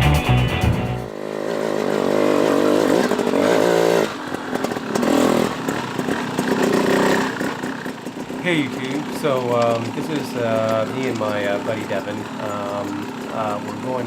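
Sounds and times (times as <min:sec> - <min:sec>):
dirt bike engine accelerating: 0:00.0 - 0:14.0.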